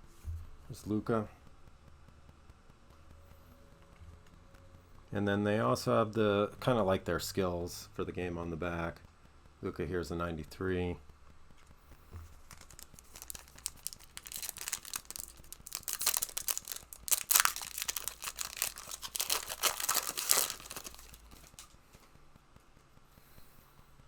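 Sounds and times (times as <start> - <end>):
wrappers tearing and crinkling: 12.2 - 21.8.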